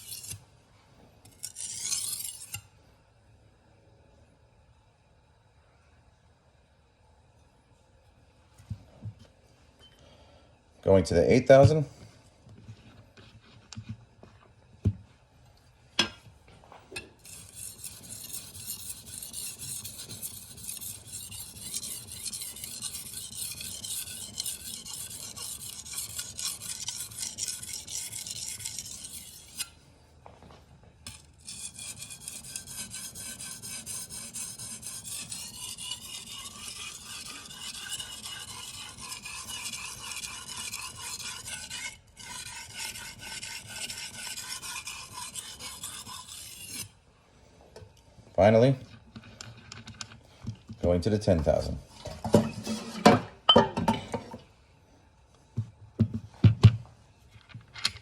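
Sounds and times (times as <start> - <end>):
knife scraping on whetstone: 0.0 - 0.4, 1.2 - 2.7, 17.0 - 29.8, 31.1 - 47.0, 51.5 - 53.2.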